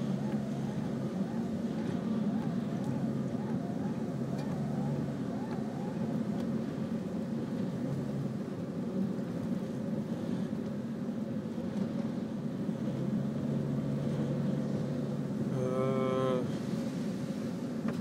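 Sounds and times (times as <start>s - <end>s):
vehicle engine and road noise: 0.0s - 18.0s.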